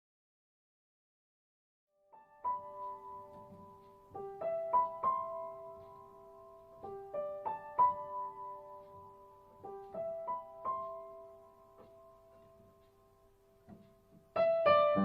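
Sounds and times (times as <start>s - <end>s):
slow piano music: 2.0s - 15.0s.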